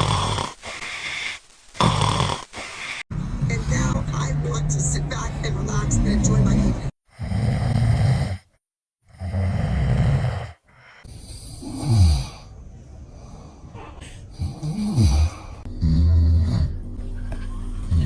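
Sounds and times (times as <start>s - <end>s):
man snoring loudly: 0.0s - 3.9s, 6.0s - 16.8s
quiet breathing: 0.0s - 4.0s, 8.2s - 15.7s.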